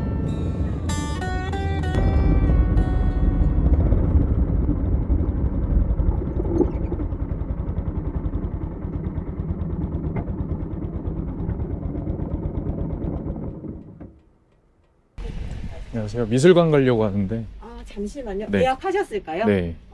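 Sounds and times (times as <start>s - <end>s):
motorcycle engine running: 0.0s - 14.3s.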